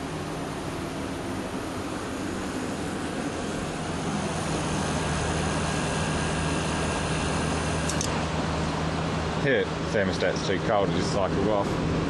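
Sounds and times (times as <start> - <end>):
air conditioner fan blowing: 0.0 - 12.0
low compressor hum: 0.0 - 12.0.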